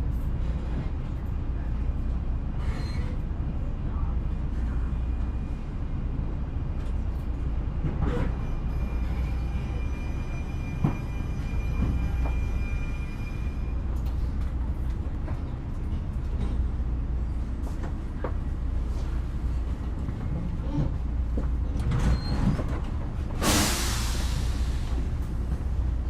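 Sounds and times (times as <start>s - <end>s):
train rumbling: 0.0s - 26.0s.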